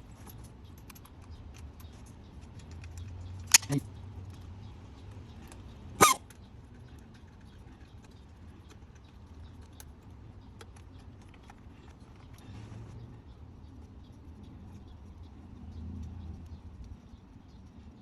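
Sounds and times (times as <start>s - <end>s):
faint clicks and taps of tools: 0.0s - 5.7s, 6.3s - 13.0s.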